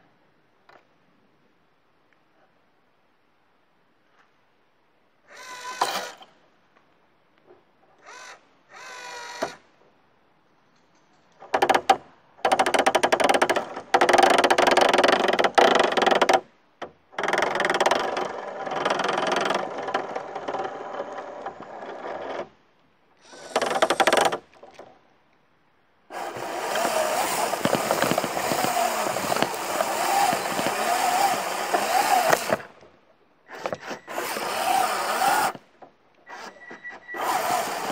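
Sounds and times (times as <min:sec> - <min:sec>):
toy car electric motor whine: 0:26.2 - 0:32.6, 0:33.6 - 0:35.6, 0:36.3 - 0:37.9.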